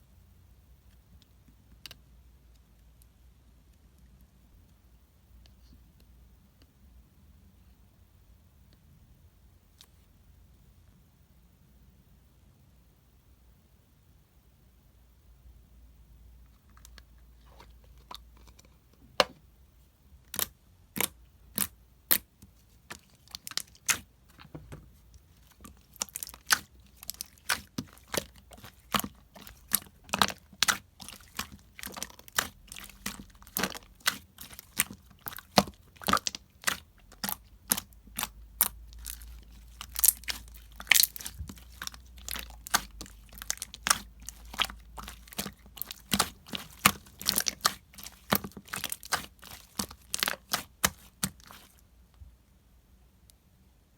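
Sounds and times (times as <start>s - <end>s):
sharp crackles and crunching clicks: 25.4s - 51.7s.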